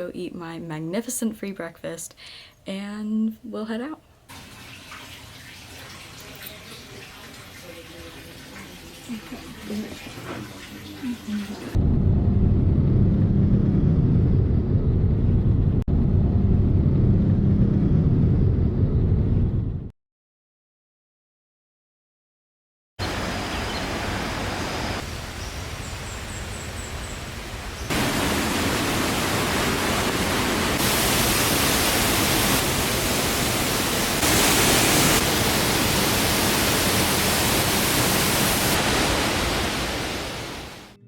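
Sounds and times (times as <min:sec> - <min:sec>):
waterfall roar: 0:23.0 - 0:40.9.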